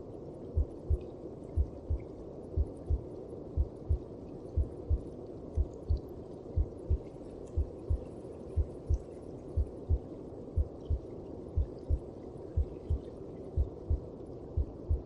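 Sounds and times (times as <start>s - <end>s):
heartbeat thumps: 0.6s - 1.0s, 1.6s - 2.0s, 2.6s - 3.0s, 3.6s - 4.0s, 4.6s - 5.0s, 5.6s - 6.0s, 6.6s - 7.0s, 7.6s - 8.0s, 9.6s - 10.0s, 10.6s - 11.0s, 12.6s - 13.0s, 13.6s - 14.0s, 14.6s - 15.0s.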